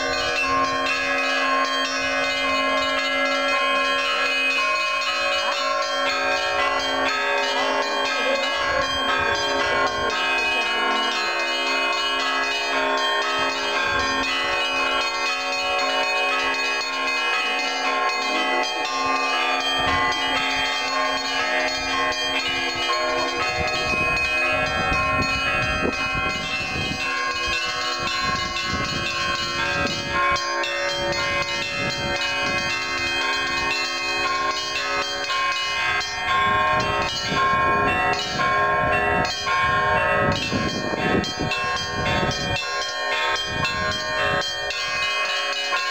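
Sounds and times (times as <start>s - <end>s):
church bells ringing: 0.0s - 45.9s.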